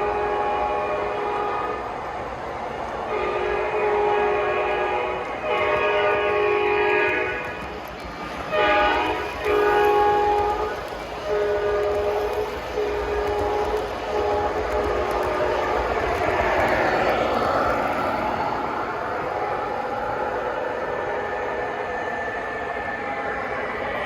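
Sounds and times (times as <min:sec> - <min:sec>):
model train horn blasts: 0:00.0 - 0:01.8, 0:03.1 - 0:07.6, 0:08.4 - 0:16.4
model train running: 0:00.0 - 0:24.0.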